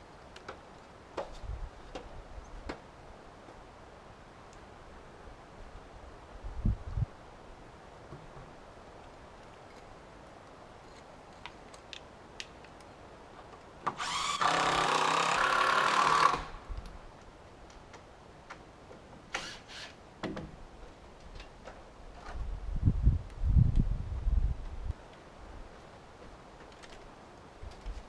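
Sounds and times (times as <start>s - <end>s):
power drill running: 14.0s - 16.6s.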